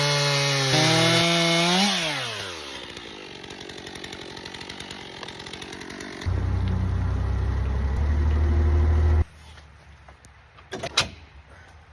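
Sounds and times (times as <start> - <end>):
loud low engine drone: 6.3 - 9.2.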